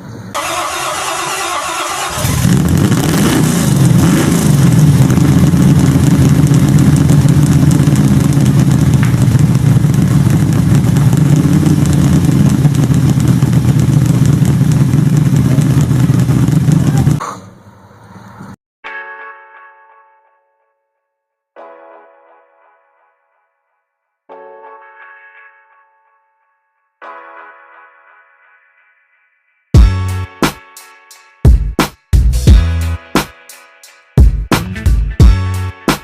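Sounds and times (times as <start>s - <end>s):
starter motor cranking: 0.4s - 5.1s
car engine running: 0.4s - 17.2s.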